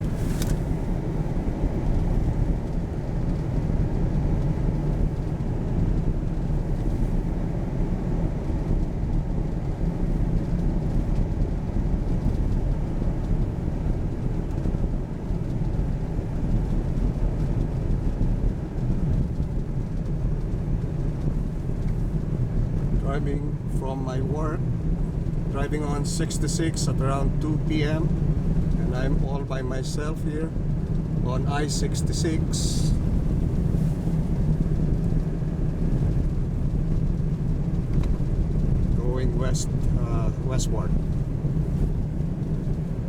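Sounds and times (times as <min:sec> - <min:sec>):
car road and engine noise: 0:00.0 - 0:43.0.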